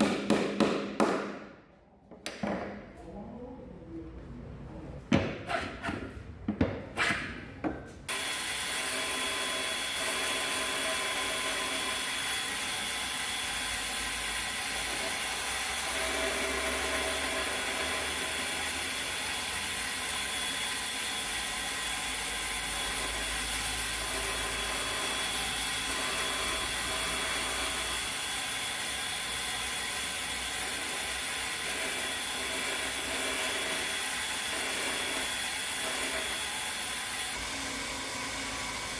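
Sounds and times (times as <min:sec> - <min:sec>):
electric drill whining: 0:08.1 - 0:38.9.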